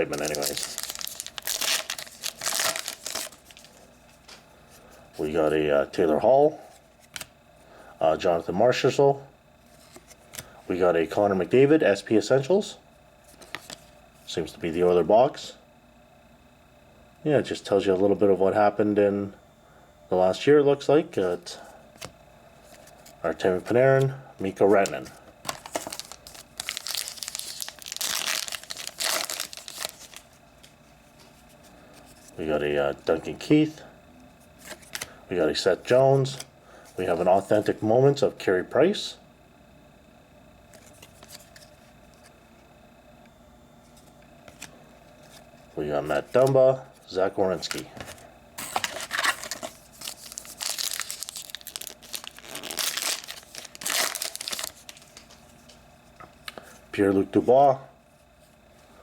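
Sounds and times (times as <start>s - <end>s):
plastic wrapper crinkling and tearing: 0.0s - 3.8s, 25.4s - 30.3s, 48.7s - 55.3s.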